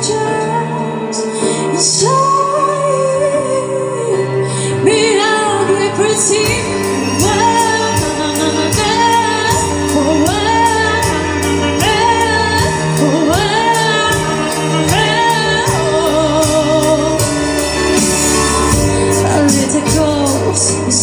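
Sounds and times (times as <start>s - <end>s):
woman singing: 0.0s - 21.0s
instrumental backing with beat: 5.0s - 21.0s.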